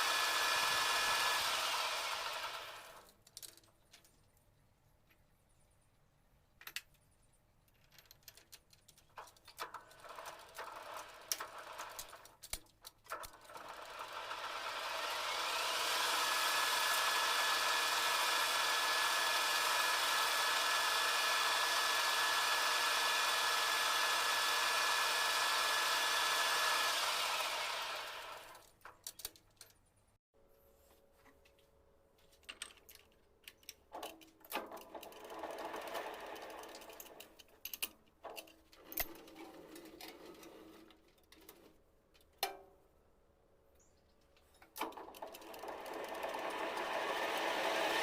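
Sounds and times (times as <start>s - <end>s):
lathe motor whining: 0.0s - 3.0s, 13.4s - 28.6s, 45.3s - 48.0s
metal parts clicking and knocking: 3.0s - 4.3s, 6.6s - 13.6s, 28.6s - 29.9s, 32.3s - 42.6s.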